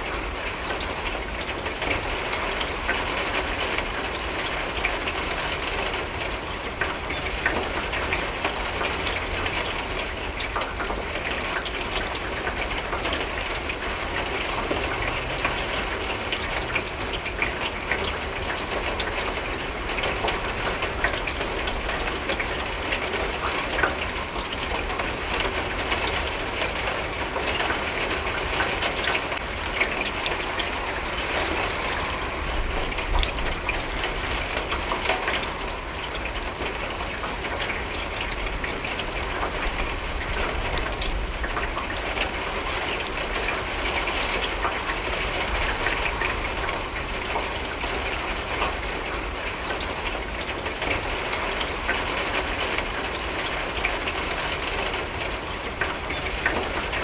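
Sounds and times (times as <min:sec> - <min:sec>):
rain tapping on window glass: 0:00.0 - 0:57.0.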